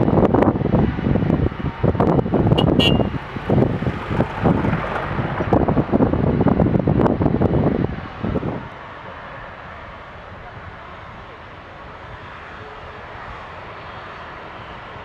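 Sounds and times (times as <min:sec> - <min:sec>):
wind buffeting microphone: 0:00.0 - 0:08.8.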